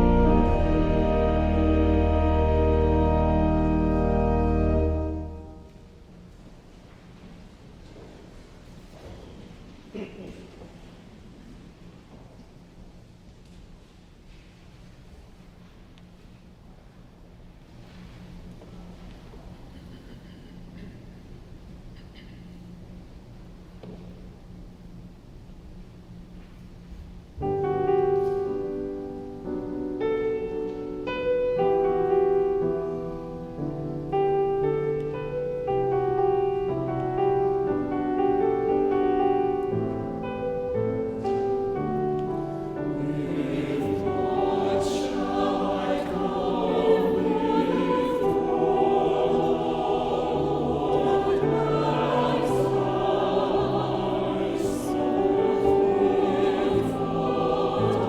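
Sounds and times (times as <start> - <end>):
church choir singing: 0.0 - 5.9, 27.4 - 58.0
organ chords: 0.0 - 6.0, 27.4 - 58.0.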